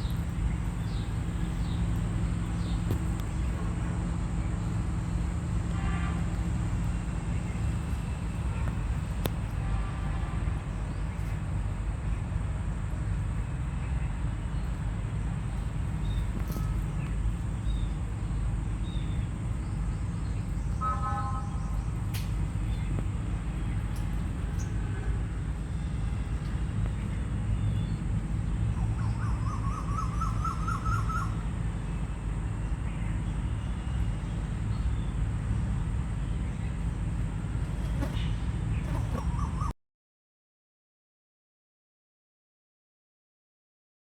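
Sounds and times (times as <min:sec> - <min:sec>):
bird calls and chirps: 0:15.5 - 0:18.1, 0:28.7 - 0:31.4, 0:37.6 - 0:39.7.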